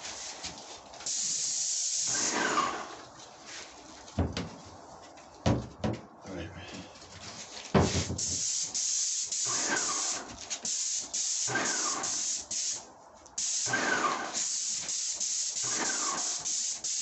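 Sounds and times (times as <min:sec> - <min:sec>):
paint spray gun hissing: 0:01.1 - 0:02.9, 0:07.8 - 0:17.0.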